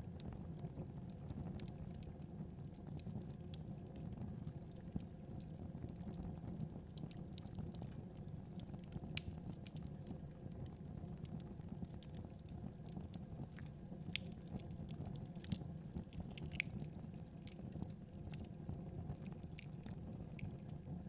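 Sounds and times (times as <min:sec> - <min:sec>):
wood fire crackling: 0:00.1 - 0:21.0
sharp pops and snaps: 0:15.4 - 0:17.7.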